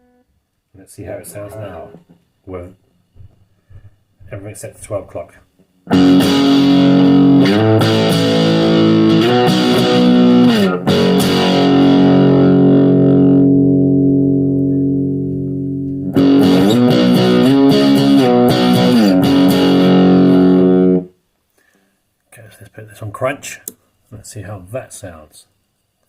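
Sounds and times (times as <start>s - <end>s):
distorted electric guitar chords: 5.8s - 21.2s.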